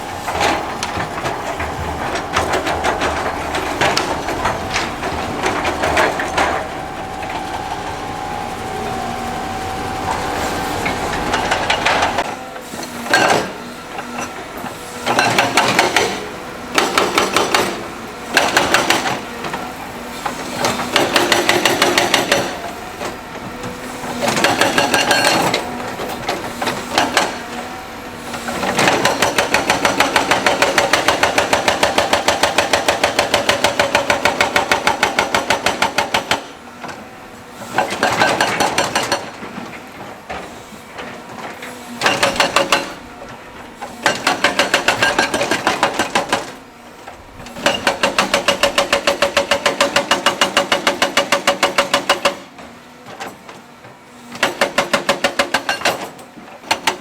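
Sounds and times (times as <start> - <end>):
machine hammering on rock: 0.2 - 8.7, 15.0 - 19.2, 20.6 - 22.6, 28.6 - 36.5, 37.8 - 39.4, 42.0 - 43.0, 44.0 - 46.6, 47.6 - 52.4, 54.4 - 56.0.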